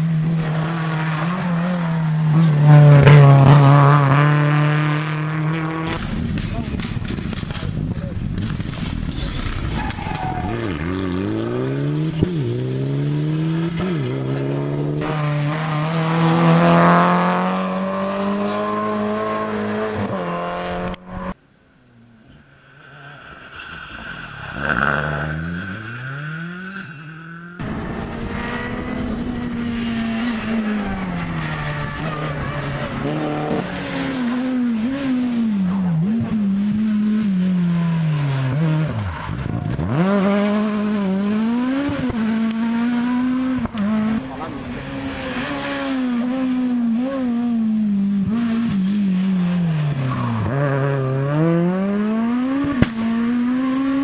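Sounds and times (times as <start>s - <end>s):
rally car engines revving: 0.0s - 54.0s
tyre squeal: 9.0s - 11.1s, 22.3s - 27.6s, 35.6s - 36.3s, 38.9s - 39.9s, 45.5s - 46.8s
car passing by: 22.3s - 36.3s.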